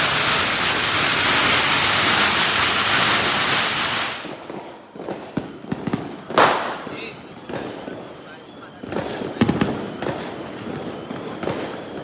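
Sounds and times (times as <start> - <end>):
firework fountain hissing: 0.0 - 4.8, 6.4 - 7.3.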